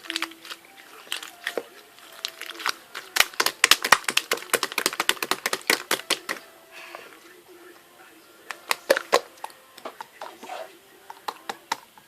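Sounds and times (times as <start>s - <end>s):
rapid sharp clicks and cracks: 2.3s - 6.4s.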